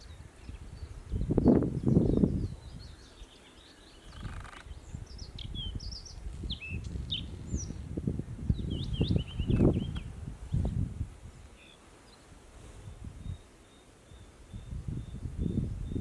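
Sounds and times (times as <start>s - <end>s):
wind rumbling on microphone: 0.0s - 16.0s
bird singing chirps and whistles: 8.6s - 10.7s.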